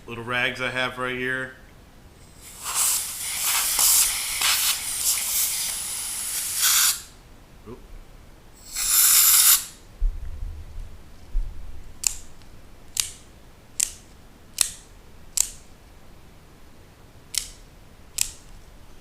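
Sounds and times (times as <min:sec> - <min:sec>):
compressed air spray hissing: 0:02.2 - 0:07.2, 0:08.6 - 0:09.8.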